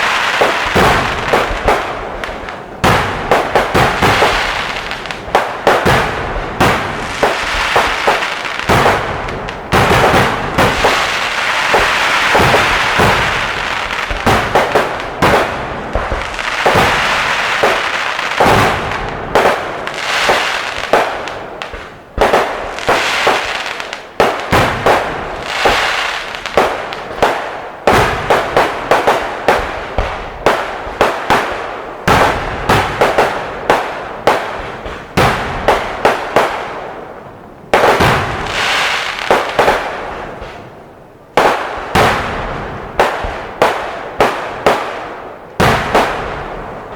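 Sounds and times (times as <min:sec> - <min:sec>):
fireworks fizzing hiss: 0:00.0 - 0:30.1, 0:37.8 - 0:40.7
fireworks bangs and crackling bursts: 0:00.0 - 0:46.9.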